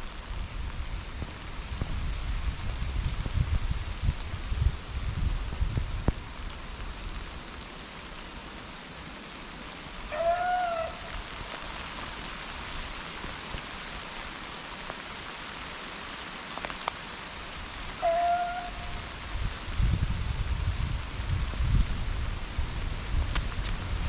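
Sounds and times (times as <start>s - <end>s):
steady hiss: 0.0s - 24.0s.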